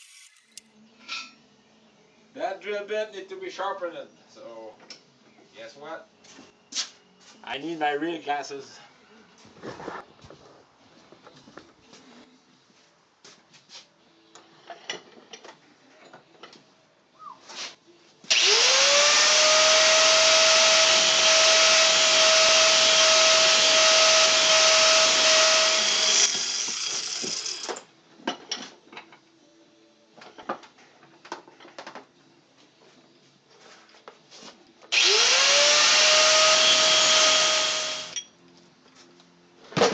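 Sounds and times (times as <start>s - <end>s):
power tool grinding drill bit: 0.0s - 0.6s, 18.3s - 27.7s, 34.9s - 38.2s.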